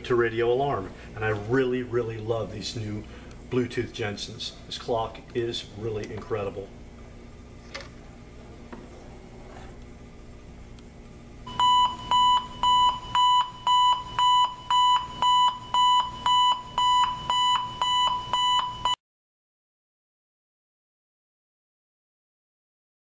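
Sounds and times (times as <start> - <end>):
alarm clock beeping: 11.5 - 19.0.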